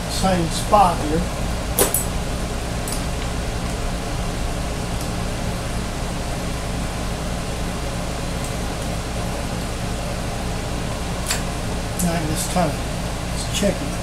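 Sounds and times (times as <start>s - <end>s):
milling machine motor hum: 0.0s - 14.0s.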